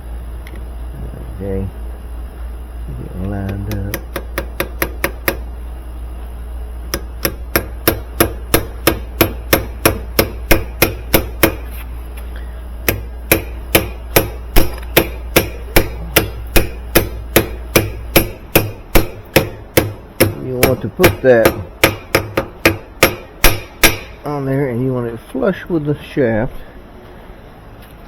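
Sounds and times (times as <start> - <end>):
hammer tapping on metal: 3.4 - 5.4, 6.9 - 11.6, 12.8 - 24.2.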